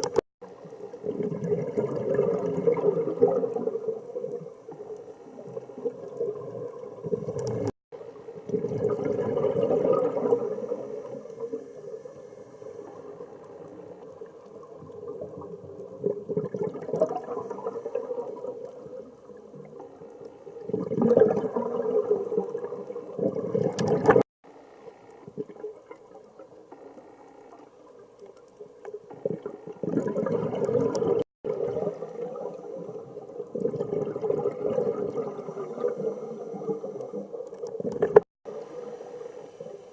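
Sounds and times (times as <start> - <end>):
bubbling exhaled air underwater: 0.0 - 24.3, 29.0 - 39.9
water noise: 0.0 - 39.9.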